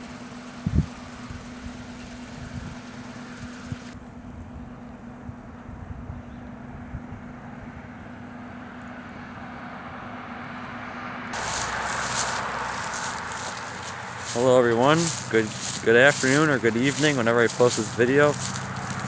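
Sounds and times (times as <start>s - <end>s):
passing vehicle: 9.0s - 19.0s
low traffic rumble: 11.4s - 19.0s.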